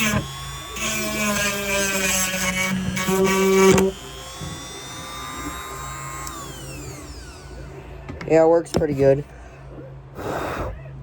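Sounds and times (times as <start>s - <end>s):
rotary tool sanding wood: 0.0s - 7.7s.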